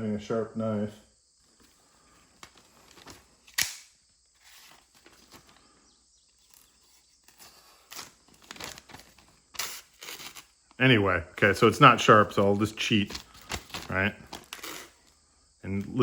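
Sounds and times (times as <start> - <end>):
knife tearing paper: 6.5 - 10.5, 13.4 - 15.0.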